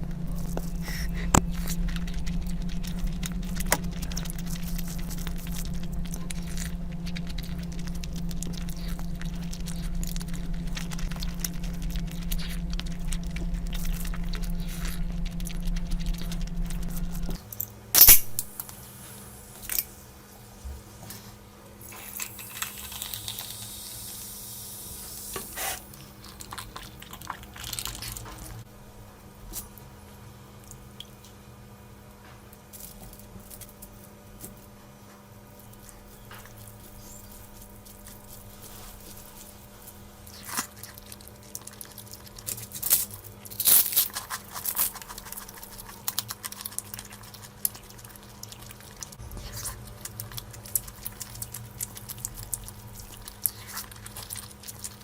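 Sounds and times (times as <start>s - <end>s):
person chewing food: 0.0s - 18.4s, 25.7s - 28.6s, 35.5s - 55.0s.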